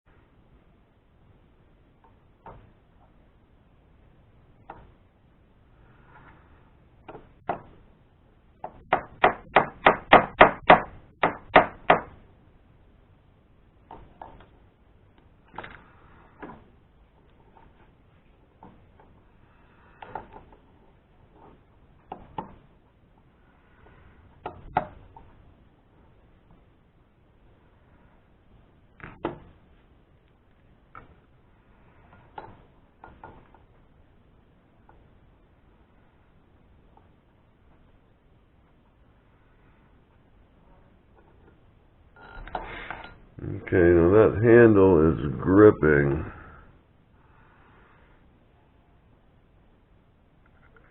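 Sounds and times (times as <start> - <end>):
hammer strikes: 8.7 - 12.2.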